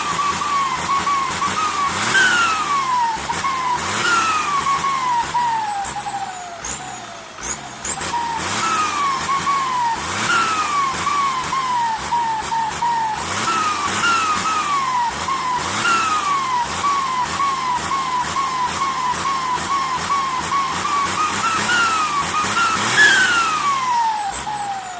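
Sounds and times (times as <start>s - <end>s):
engine revving: 0.0s - 24.9s
turbocharger whistling: 0.0s - 24.9s.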